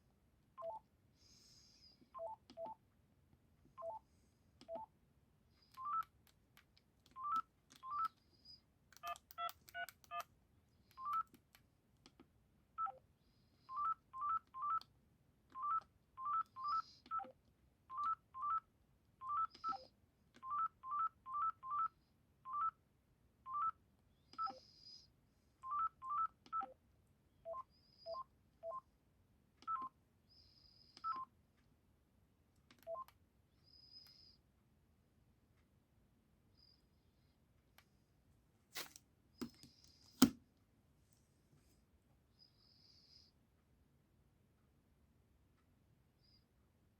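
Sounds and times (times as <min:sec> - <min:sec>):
phone keypad beeps: 0:00.6 - 0:00.8, 0:02.2 - 0:02.8, 0:05.7 - 0:06.1, 0:07.2 - 0:08.2, 0:09.0 - 0:10.3, 0:11.0 - 0:11.3, 0:13.7 - 0:14.8, 0:15.6 - 0:17.3, 0:17.9 - 0:18.6, 0:19.2 - 0:21.9, 0:29.6 - 0:30.0, 0:31.0 - 0:31.3, 0:32.8 - 0:33.1.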